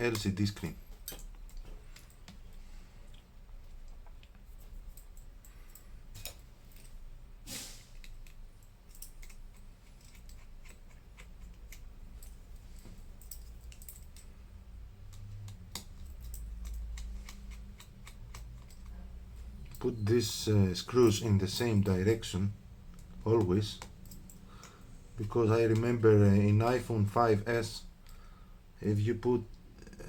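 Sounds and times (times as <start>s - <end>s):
small tools clicking and tapping: 0.0s - 6.9s, 8.0s - 19.9s
short scrape: 7.5s - 8.0s.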